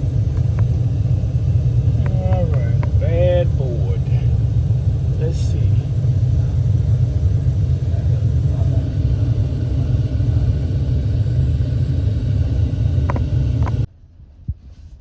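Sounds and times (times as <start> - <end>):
vehicle cabin road rumble: 0.0 - 15.0.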